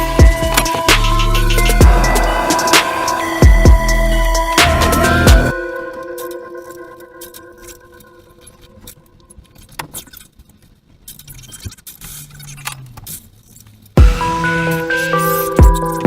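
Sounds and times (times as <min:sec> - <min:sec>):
loud music with a beat: 0:00.0 - 0:06.2, 0:14.0 - 0:15.0.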